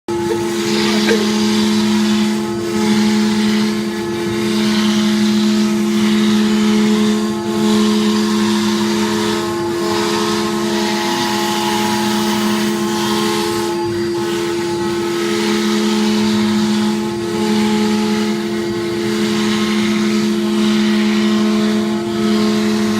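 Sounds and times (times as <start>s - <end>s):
router spindle whine: 0.1s - 22.9s
hiss of cutting: 0.2s - 3.1s.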